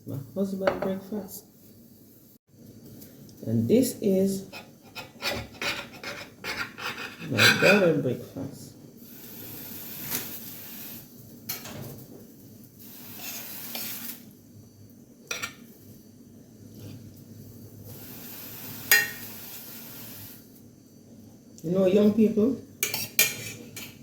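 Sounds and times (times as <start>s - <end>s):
plates and cutlery clinking: 15.3s - 15.6s, 22.8s - 24.0s.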